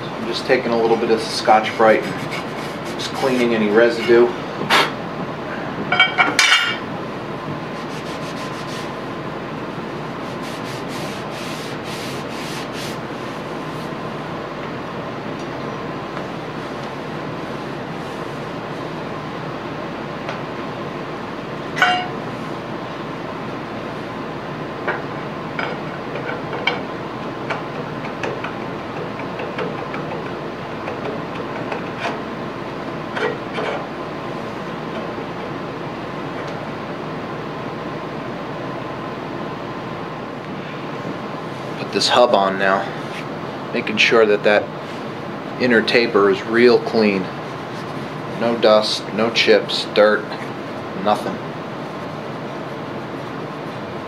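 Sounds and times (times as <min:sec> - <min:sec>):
steady background hiss: 0:00.0 - 0:28.6
abrasive pad rubbing metal: 0:01.8 - 0:04.2, 0:07.7 - 0:09.0, 0:10.2 - 0:14.0.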